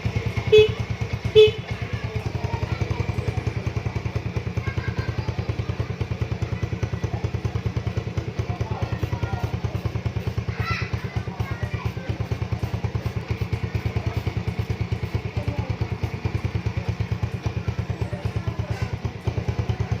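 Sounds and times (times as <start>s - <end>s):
motorcycle engine idling: 0.0s - 20.0s
motorcycle horn beep: 0.2s - 2.0s.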